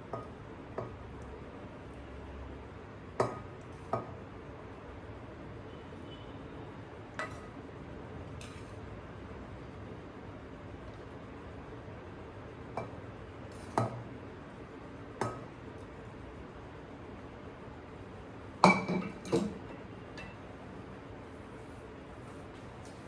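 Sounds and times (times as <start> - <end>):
glass and ceramic dishes clinking: 18.6 - 20.4.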